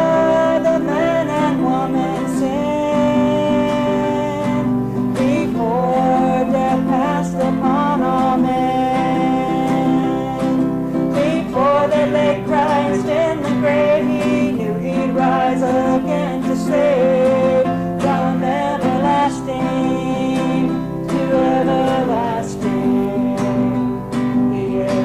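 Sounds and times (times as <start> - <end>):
country gospel music: 0.0 - 25.0
strummed acoustic guitar: 0.0 - 25.0.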